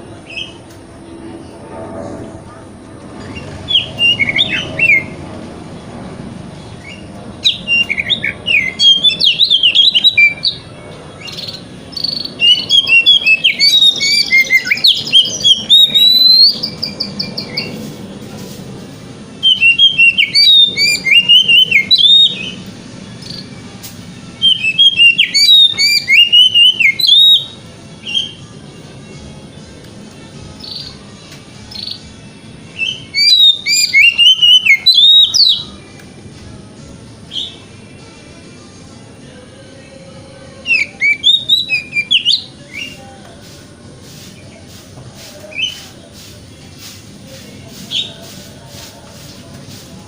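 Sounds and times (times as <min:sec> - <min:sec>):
bird singing whistled phrases: 0:00.3 - 0:00.6, 0:03.2 - 0:05.2, 0:06.8 - 0:10.6, 0:11.2 - 0:17.8, 0:19.4 - 0:22.6, 0:24.4 - 0:28.4, 0:32.8 - 0:35.7, 0:40.6 - 0:43.0, 0:45.5 - 0:45.8.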